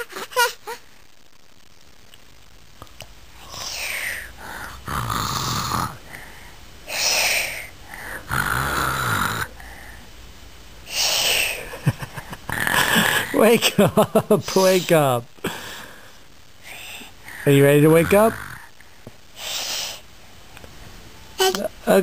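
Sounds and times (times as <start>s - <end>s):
child pretend snoring: 3.4s - 6.3s, 6.9s - 9.8s, 10.9s - 11.6s, 12.5s - 13.4s, 18.0s - 18.7s.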